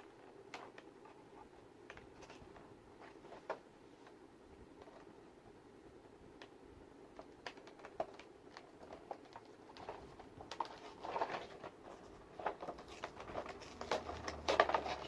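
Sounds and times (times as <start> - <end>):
plastic and cardboard crinkling: 0.0 - 4.2, 7.1 - 15.0.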